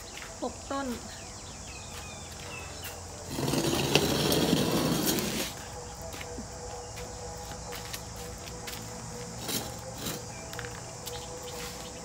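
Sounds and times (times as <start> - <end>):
loud rustling scraping: 3.2 - 5.7.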